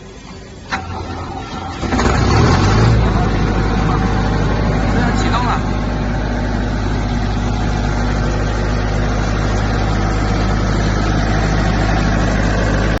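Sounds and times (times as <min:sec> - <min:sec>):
air compressor low hum: 0:03.0 - 0:13.0.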